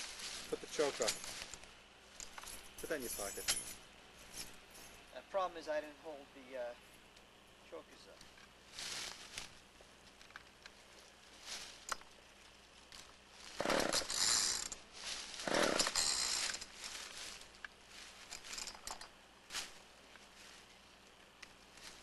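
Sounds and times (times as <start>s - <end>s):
handling sounds: 0.0s - 5.1s
chainsaw starter cord pulls: 13.6s - 14.8s, 15.4s - 16.7s, 18.3s - 19.1s.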